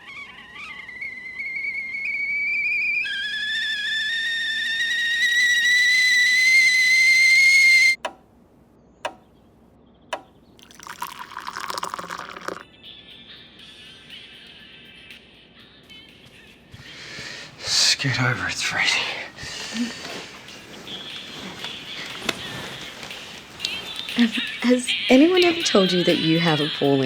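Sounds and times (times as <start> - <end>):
high whistle rising in pitch: 0.0 - 8.0
lower louder whistle: 0.0 - 8.0.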